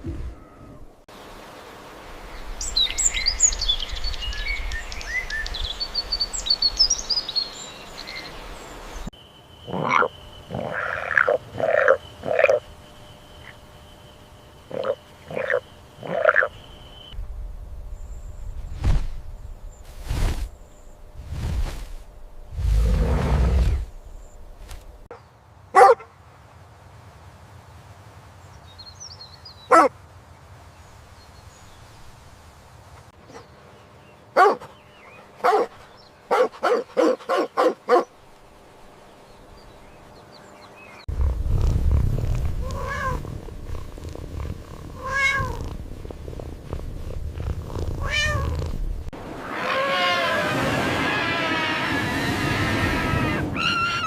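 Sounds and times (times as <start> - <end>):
low rumble: 17.2 - 25.1, 41.1 - 49.3
cat meowing: 42.6 - 43.2, 45.0 - 45.6, 48.0 - 48.6.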